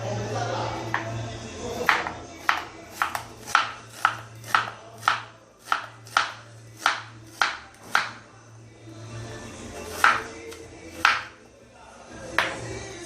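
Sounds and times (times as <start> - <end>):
knife chopping on cutting board: 1.8 - 8.2, 9.9 - 11.4, 12.4 - 12.6.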